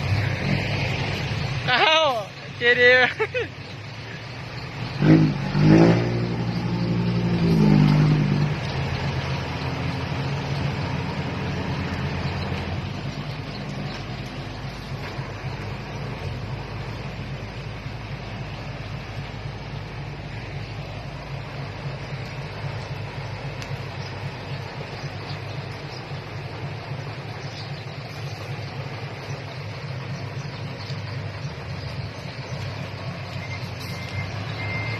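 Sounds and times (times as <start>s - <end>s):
vehicle engine revving: 0.0s - 34.9s.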